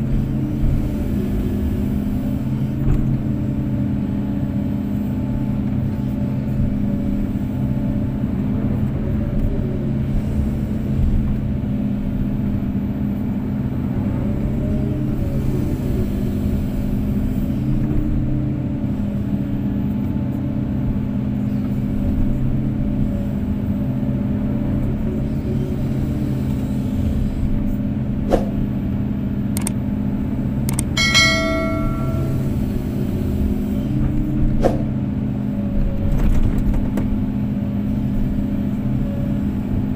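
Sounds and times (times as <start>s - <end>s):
sharp knocks: 31.0s - 32.6s
ringing metallic clang: 31.0s - 32.8s.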